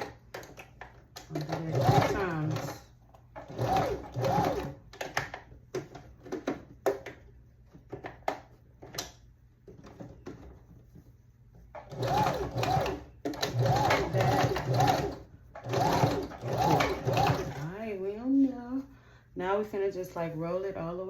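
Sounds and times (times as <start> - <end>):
sewing machine stitching: 1.2 - 2.8, 3.4 - 5.4, 11.8 - 17.8.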